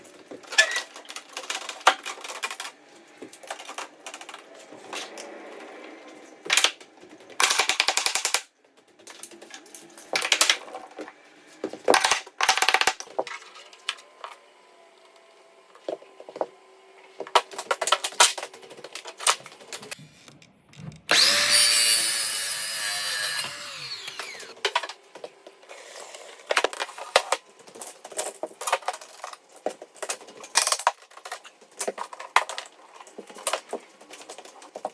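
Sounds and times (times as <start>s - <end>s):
power tool bursts on wood: 21.1s - 24.6s
power tool motor running: 21.1s - 24.6s.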